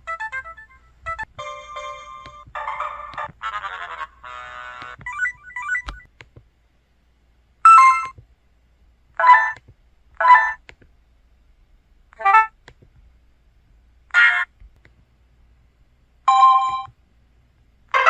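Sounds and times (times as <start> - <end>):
small electronic beeps: 5.1 - 6.1.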